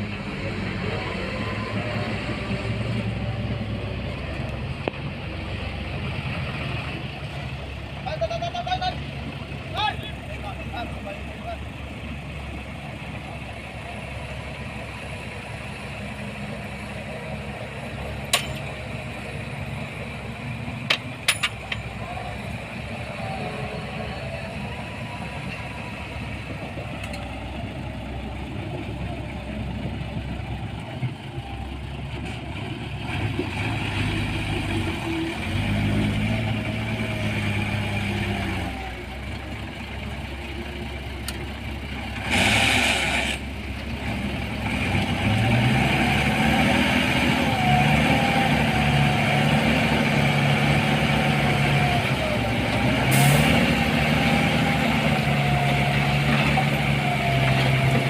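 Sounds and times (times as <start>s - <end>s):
heavy diesel engine revving: 0.0s - 58.0s
short loud hiss: 42.3s - 43.4s.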